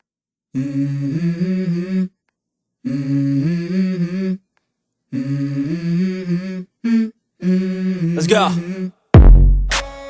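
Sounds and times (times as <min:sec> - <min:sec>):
low wordless humming vocals: 0:00.6 - 0:02.2, 0:02.8 - 0:04.4, 0:05.1 - 0:09.0.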